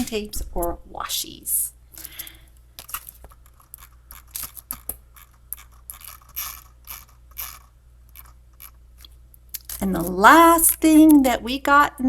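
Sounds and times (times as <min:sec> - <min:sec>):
packaging rustling: 0:02.8 - 0:06.3.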